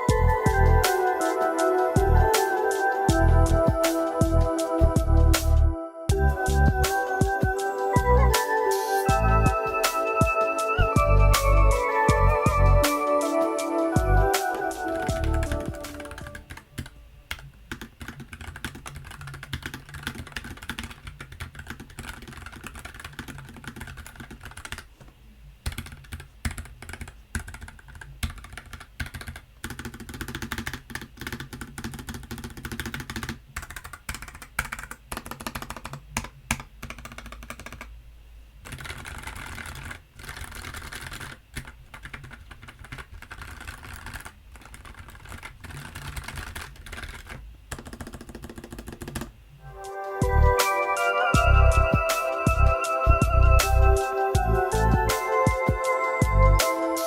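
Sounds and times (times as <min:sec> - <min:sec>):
mechanical keyboard typing: 0:09.4 - 0:37.9, 0:38.6 - 0:49.4.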